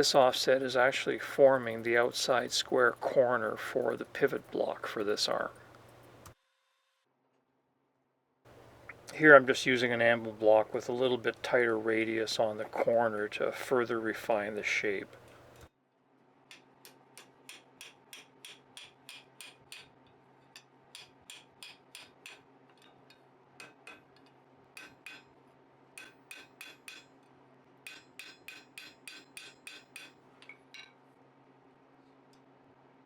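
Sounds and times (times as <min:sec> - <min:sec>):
hammer striking steel on anvil: 0:17.2 - 0:19.9, 0:20.6 - 0:22.4, 0:23.6 - 0:24.0, 0:24.8 - 0:25.3, 0:26.0 - 0:27.1, 0:27.9 - 0:30.2.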